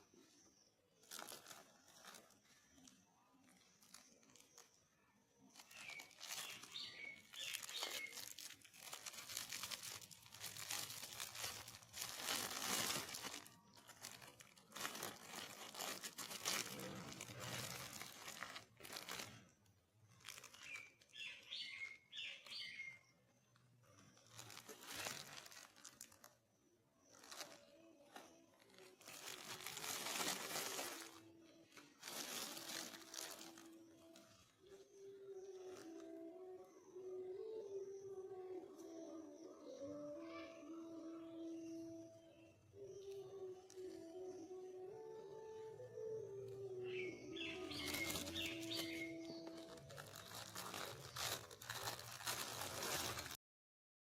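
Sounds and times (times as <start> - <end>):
packaging tearing and crinkling: 1.0 - 2.9, 5.5 - 22.7, 24.0 - 26.4, 27.1 - 34.3, 47.4 - 53.4.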